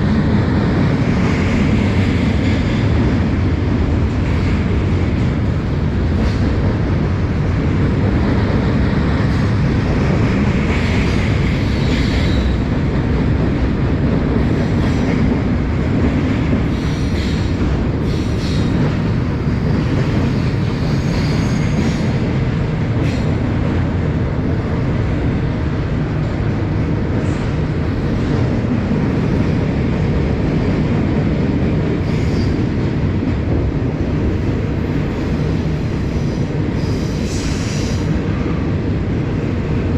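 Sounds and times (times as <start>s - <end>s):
freight train rumbling past: 0.0s - 39.9s
train wheel squeals and clicks: 10.7s - 12.7s, 14.4s - 15.3s, 16.6s - 19.0s, 19.7s - 22.2s, 32.0s - 32.7s, 35.4s - 38.1s.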